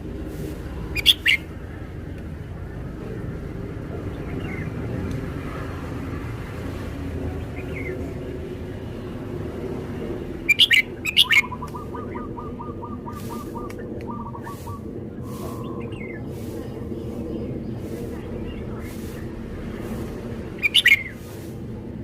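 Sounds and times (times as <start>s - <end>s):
steady low rumble: 0.0s - 22.0s
bird singing: 1.0s - 1.5s, 10.4s - 19.2s, 20.6s - 21.3s.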